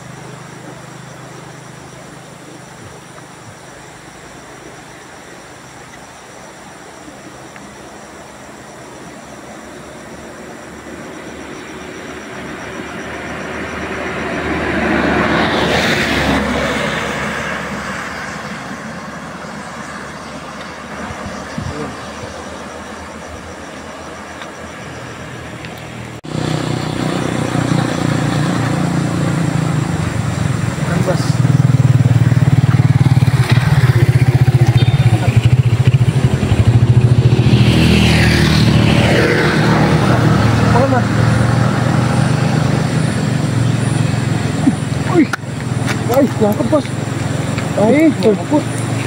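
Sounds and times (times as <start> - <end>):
vehicle passing by rumbling: 9.8 - 24.2, 25.0 - 49.0.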